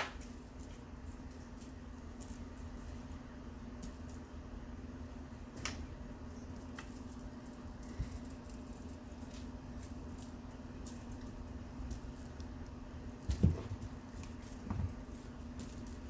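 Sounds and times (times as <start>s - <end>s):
steady low hum: 0.0s - 16.0s
soft taps and rustles: 13.2s - 15.3s.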